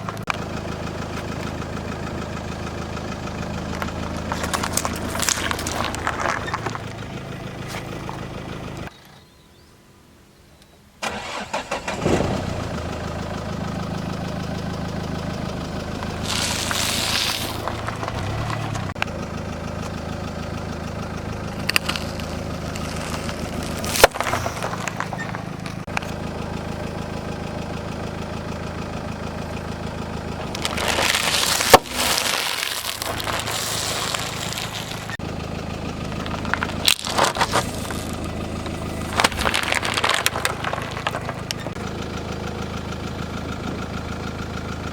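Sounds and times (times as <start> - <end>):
car engine idling: 0.0 - 10.2, 11.0 - 44.9
tyre crushing objects: 3.8 - 7.0, 16.0 - 18.9, 21.6 - 25.9, 30.5 - 35.2, 36.2 - 41.8.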